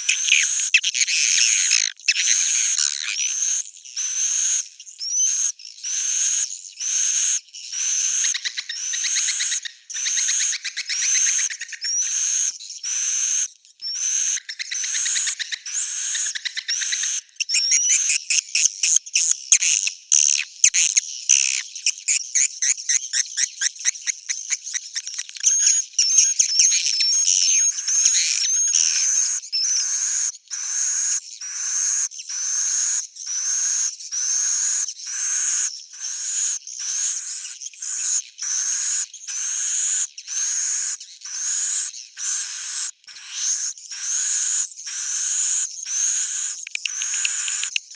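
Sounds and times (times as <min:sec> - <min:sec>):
swiftlet twittering chirps: 0:43.2 - 0:47.9
rapid clicking chirps and trills: 0:45.9 - 0:47.9.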